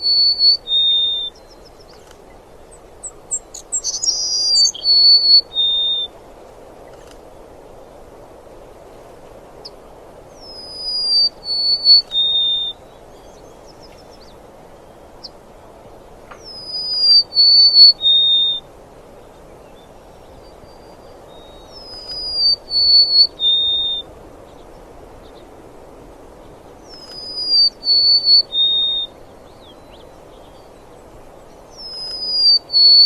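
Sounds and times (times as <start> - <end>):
songbird whistling: 0.0 - 6.2, 10.4 - 15.3, 16.3 - 18.7, 19.8 - 24.1, 26.8 - 30.8, 31.7 - 33.0.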